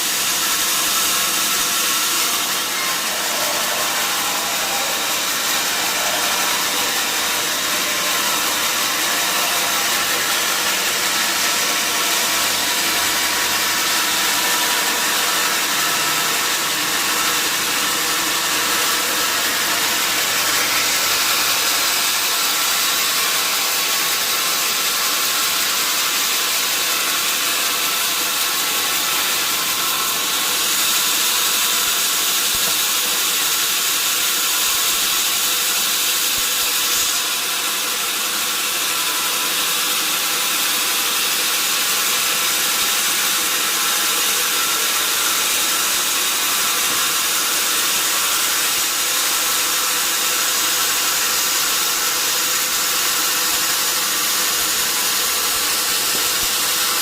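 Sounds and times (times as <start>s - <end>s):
machine whine: 0.0s - 57.0s
sawmill saw cutting wood: 0.0s - 57.0s.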